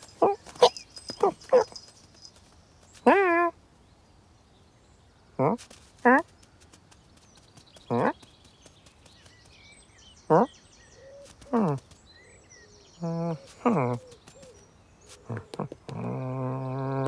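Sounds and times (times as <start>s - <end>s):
faint birdsong: 0.0s - 17.0s.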